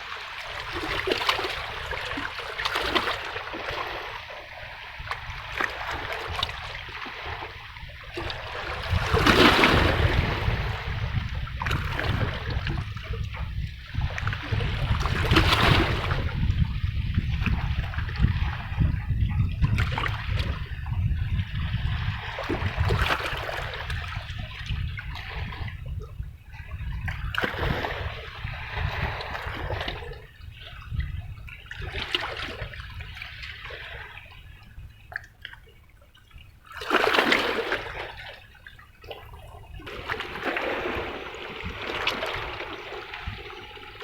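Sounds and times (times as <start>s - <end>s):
waves splashing against rocks: 0.0s - 25.9s, 36.7s - 44.0s.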